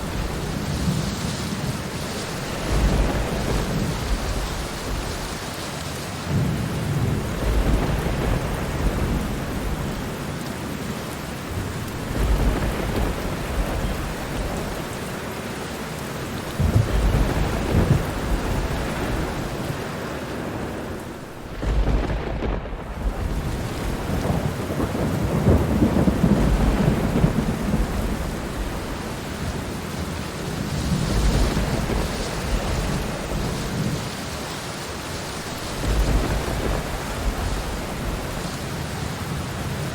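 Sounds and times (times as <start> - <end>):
thunder rolling: 0.0 - 10.4, 11.3 - 15.3, 16.2 - 39.9
steady rain: 0.0 - 39.9.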